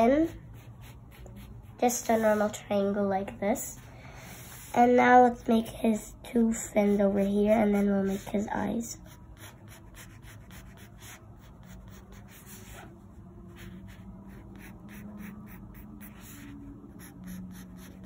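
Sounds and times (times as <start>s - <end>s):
pencil scratching on paper: 0.0s - 2.6s, 6.7s - 12.9s, 13.5s - 18.0s.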